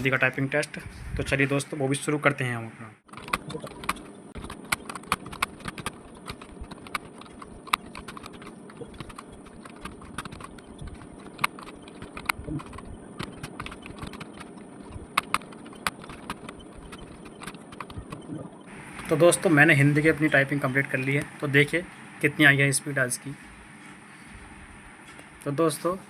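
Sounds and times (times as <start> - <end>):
keyboard typing: 3.1 - 21.3.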